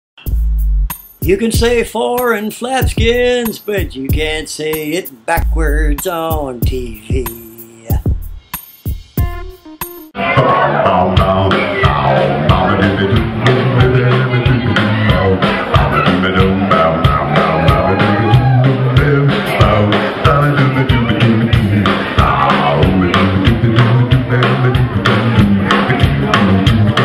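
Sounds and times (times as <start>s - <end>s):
fast drum beat: 0.2s - 10.2s
rock song: 0.2s - 27.0s.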